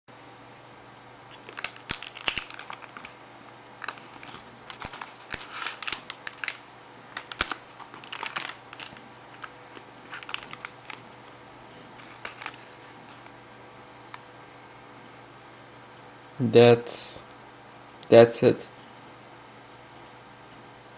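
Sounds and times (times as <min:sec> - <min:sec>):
packaging crinkling and tearing: 0:01.3 - 0:03.2, 0:03.8 - 0:11.3, 0:12.0 - 0:13.3.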